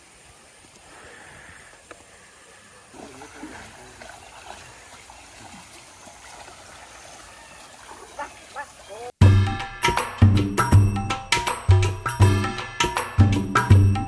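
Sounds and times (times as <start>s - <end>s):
water trickling: 2.7s - 9.1s.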